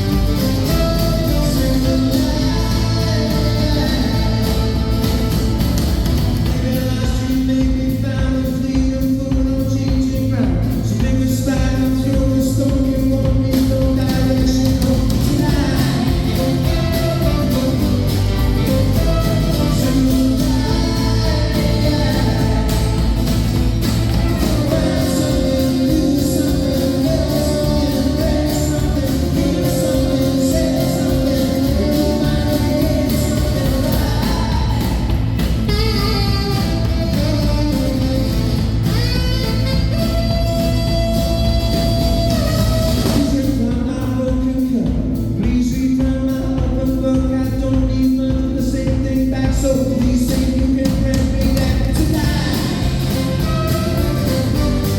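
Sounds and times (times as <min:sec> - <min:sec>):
person singing long notes: 0:00.0 - 0:07.7, 0:12.1 - 0:43.6
guitar: 0:00.0 - 0:54.9.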